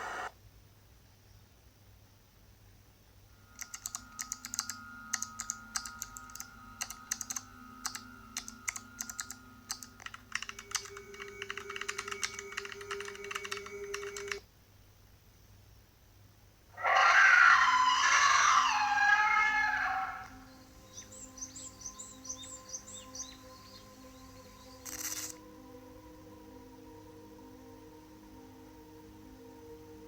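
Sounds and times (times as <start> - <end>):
electronic hum tones: 0.0 - 0.3, 3.4 - 14.4
keyboard typing clicks: 3.6 - 14.4, 24.8 - 25.4.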